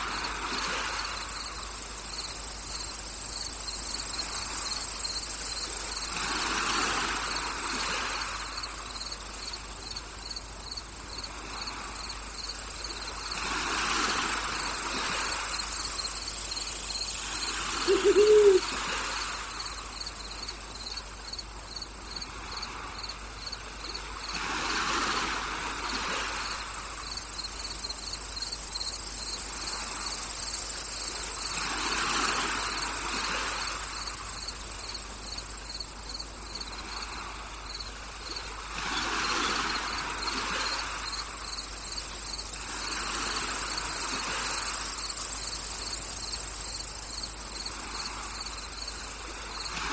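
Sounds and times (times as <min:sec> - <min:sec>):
crickets and insects chirping: 0:00.0 - 0:49.9
short low call: 0:17.9 - 0:18.6.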